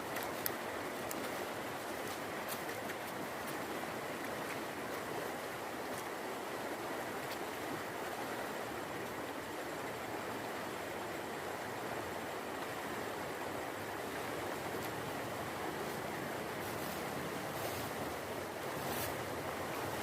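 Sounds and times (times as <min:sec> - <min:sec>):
river water rushing: 0:00.0 - 0:20.0.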